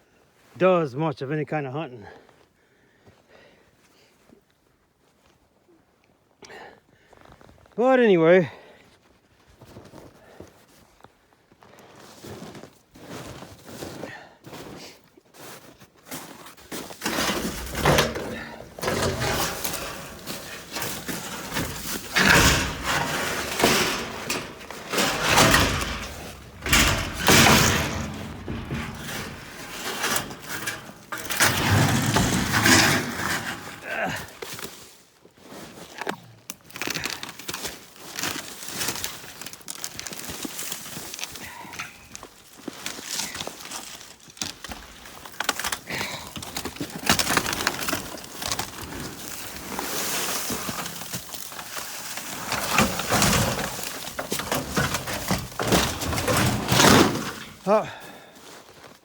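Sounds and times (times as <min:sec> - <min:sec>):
footsteps crunching through frozen brush: 0:36.6 - 0:41.4, 0:42.2 - 0:45.3.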